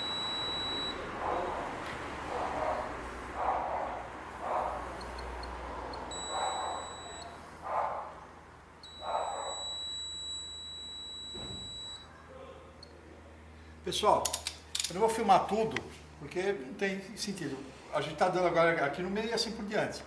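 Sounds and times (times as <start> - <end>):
high-pitched beeps: 0.0 - 1.1.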